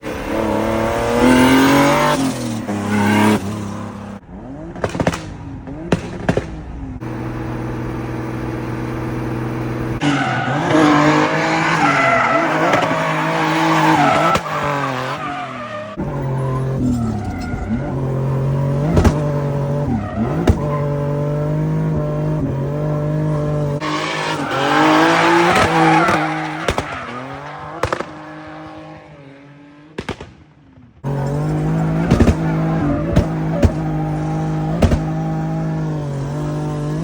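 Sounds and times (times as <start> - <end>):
car engine revving: 0.0 - 30.0, 30.9 - 37.0
sharp cracks: 4.7 - 6.8, 25.4 - 28.3, 30.0 - 30.7, 34.7 - 35.2
tyre squeal: 10.0 - 21.4.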